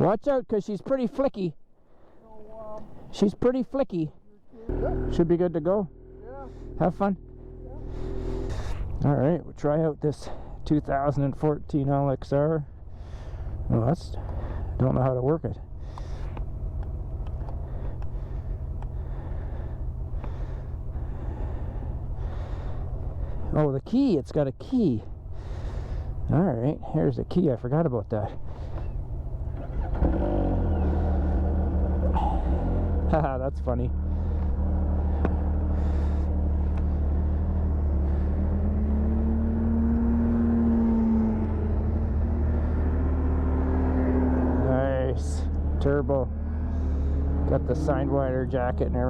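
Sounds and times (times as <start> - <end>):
close breathing: 1.8 - 3.2, 6.0 - 9.0, 10.2 - 10.7, 12.8 - 14.8, 15.7 - 23.6, 25.0 - 27.0, 28.2 - 33.1, 33.9 - 44.6, 45.4 - 47.6
snowmobile engine idling: 4.4 - 49.0
steady low rumble: 4.7 - 40.1
faint clicks: 15.9 - 18.2.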